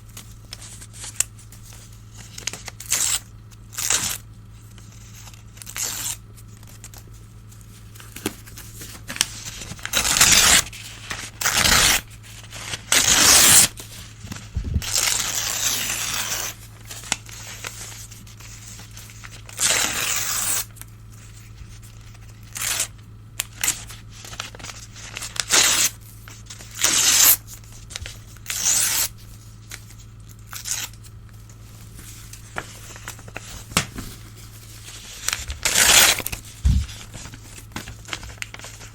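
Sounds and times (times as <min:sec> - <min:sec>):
newspaper tearing: 0:05.0 - 0:06.2, 0:07.9 - 0:20.7, 0:23.5 - 0:31.1, 0:31.8 - 0:38.9.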